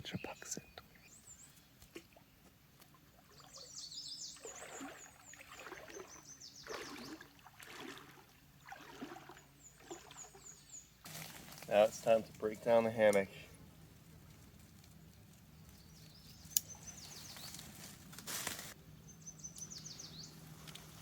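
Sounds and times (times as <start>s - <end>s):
water trickling and splashing: 1.9s - 15.5s
bird chirps: 3.3s - 7.2s, 15.6s - 17.7s, 19.0s - 20.4s.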